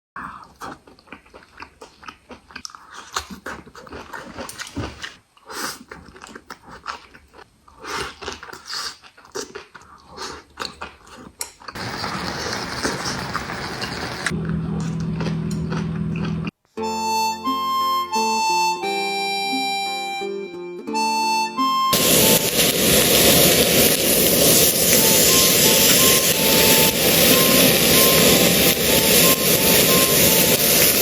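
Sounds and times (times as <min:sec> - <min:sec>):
person chewing crunchy food: 0:00.2 - 0:11.8, 0:12.4 - 0:16.7
steady hiss: 0:11.8 - 0:14.3, 0:22.0 - 0:31.0.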